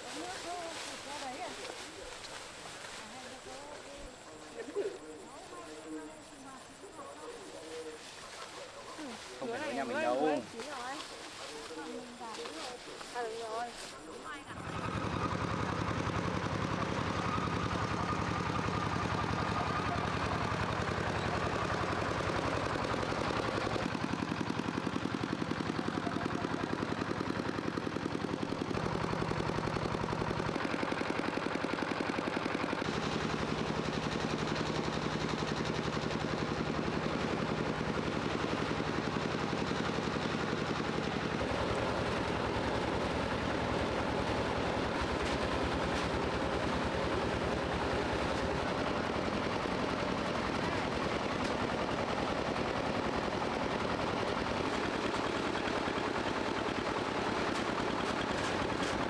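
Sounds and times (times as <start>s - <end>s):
small engine running: 0.0s - 59.0s.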